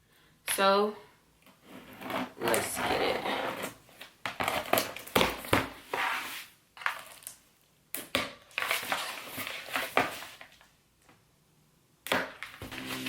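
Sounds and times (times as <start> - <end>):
cardboard rustling and scraping: 1.6 - 6.6.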